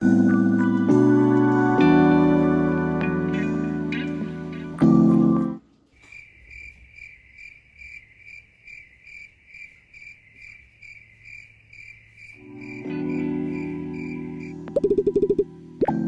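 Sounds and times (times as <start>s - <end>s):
music: 0.0s - 5.6s, 12.4s - 16.0s
cricket chirping: 5.7s - 16.0s.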